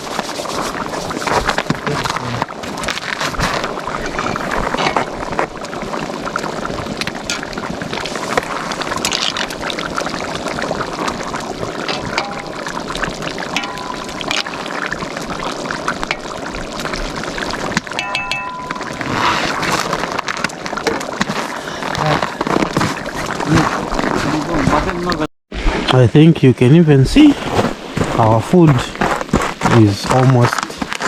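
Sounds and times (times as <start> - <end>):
food bubbling in a cauldron: 0.0 - 26.0.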